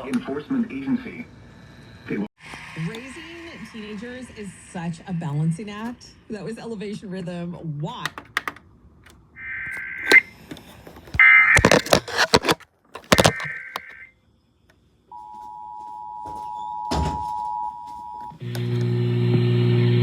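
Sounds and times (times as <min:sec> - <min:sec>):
radio clicks and crackles: 0:07.9 - 0:14.1.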